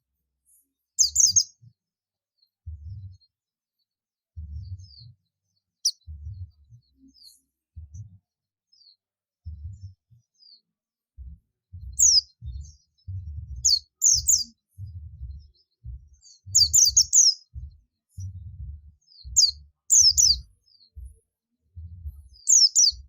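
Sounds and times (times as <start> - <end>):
bird chirping high-pitched: 1.0 - 1.5, 5.8 - 6.2, 11.9 - 15.6, 16.2 - 18.4, 19.1 - 21.1, 22.2 - 23.0
low thuds: 11.2 - 21.2.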